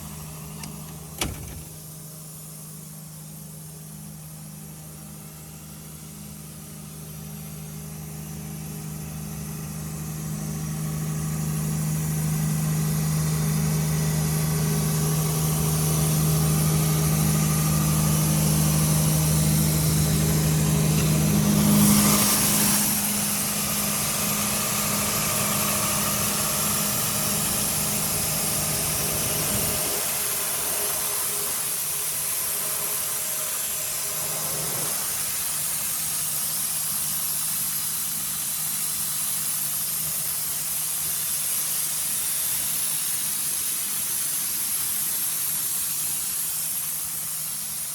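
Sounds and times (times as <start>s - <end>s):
loud burst of hiss: 0.6s - 1.8s.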